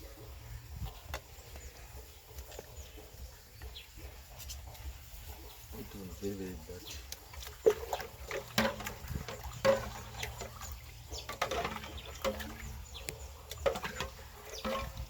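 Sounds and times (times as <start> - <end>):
water splashing in a basin: 5.8 - 15.0
utensils clinking: 7.6 - 15.0.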